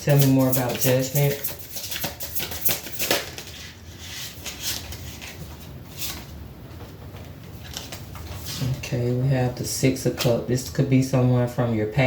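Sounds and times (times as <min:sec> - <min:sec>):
cards being shuffled: 0:07.5 - 0:08.8.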